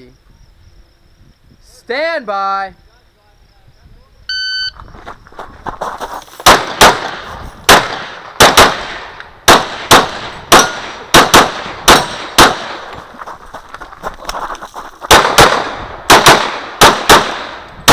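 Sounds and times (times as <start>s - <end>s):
pistol shots: 6.4s - 13.0s, 15.1s - 17.9s.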